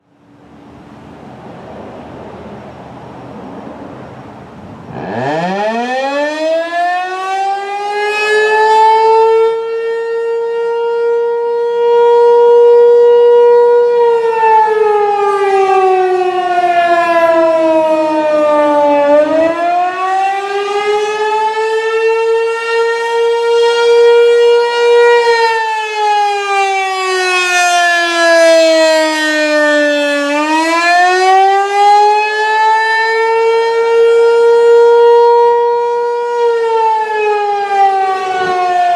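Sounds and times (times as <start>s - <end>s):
warning siren wailing: 1.9s - 38.9s.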